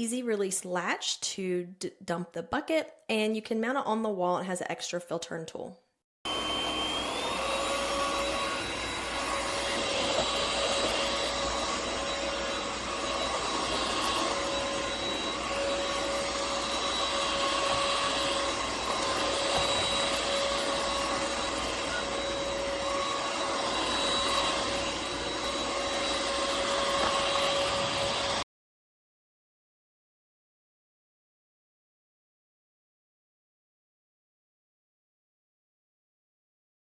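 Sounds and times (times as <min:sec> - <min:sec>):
stick vacuum whining: 0:06.3 - 0:28.4.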